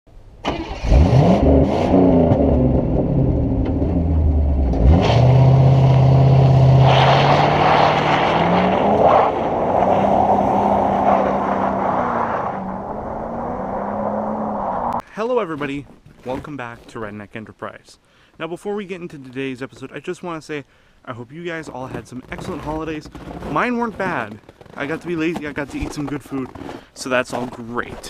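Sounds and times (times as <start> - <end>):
engine revving: 0.5 - 15.0.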